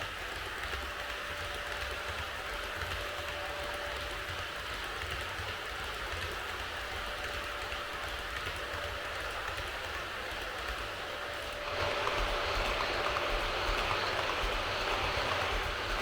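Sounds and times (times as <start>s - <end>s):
model train wheels rumbling on rails: 0.0s - 16.0s
thin motor whine: 5.7s - 16.0s.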